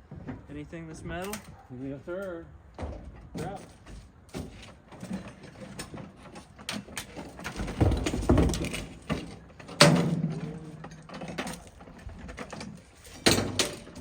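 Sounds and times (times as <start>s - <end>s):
scrap metal knocks and clatters: 2.8s - 14.0s.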